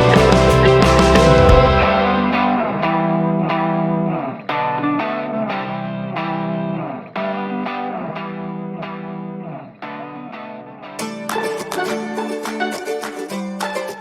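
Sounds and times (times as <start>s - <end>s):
deep bass: 0.0s - 3.3s
electric guitar picking pattern: 0.0s - 14.0s.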